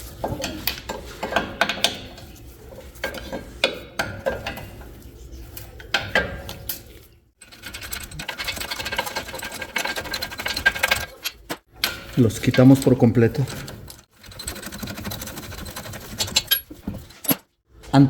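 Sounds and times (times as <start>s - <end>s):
metal clinks and knocks: 7.4s - 17.5s.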